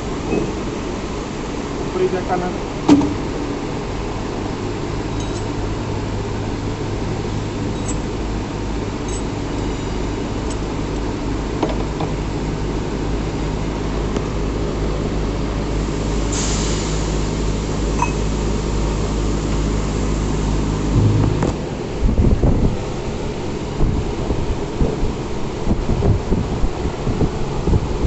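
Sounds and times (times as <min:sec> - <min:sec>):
light metallic clinks: 0:05.2 - 0:05.6, 0:07.7 - 0:08.1, 0:09.0 - 0:10.6
low thump: 0:20.9 - 0:21.7.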